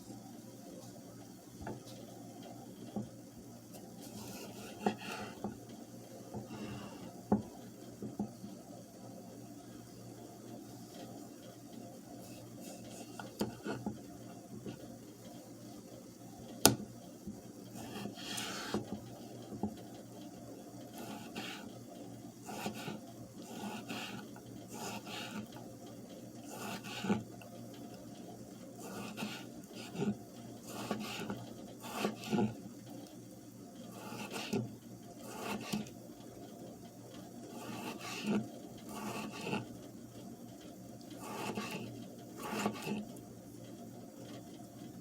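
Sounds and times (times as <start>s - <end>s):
utensil scraping food: 4.0s - 5.4s, 12.2s - 14.0s, 17.7s - 18.9s, 20.9s - 21.7s, 22.4s - 25.6s, 26.4s - 27.3s, 28.8s - 32.6s, 33.8s - 35.9s, 37.4s - 39.7s, 41.1s - 43.1s.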